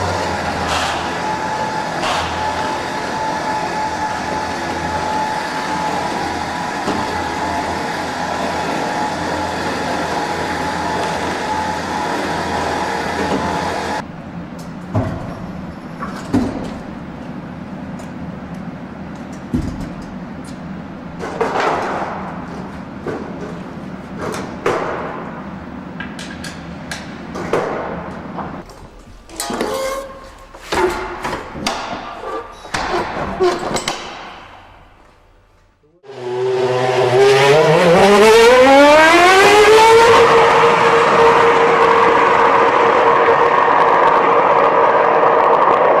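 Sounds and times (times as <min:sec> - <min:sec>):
knocks and clatter: 0:14.6 - 0:18.2, 0:19.1 - 0:35.6
racing car engine revving: 0:36.0 - 0:46.0.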